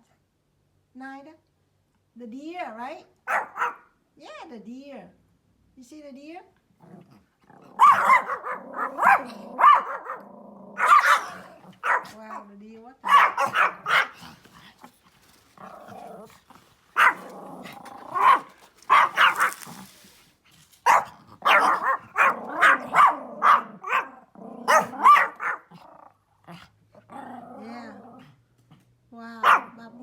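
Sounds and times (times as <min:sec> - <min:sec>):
small dog barking: 0:03.2 - 0:04.0, 0:07.6 - 0:14.8, 0:16.9 - 0:19.8, 0:20.8 - 0:25.8, 0:29.4 - 0:29.9
dog growling: 0:06.8 - 0:12.4, 0:13.0 - 0:20.2, 0:21.0 - 0:28.8.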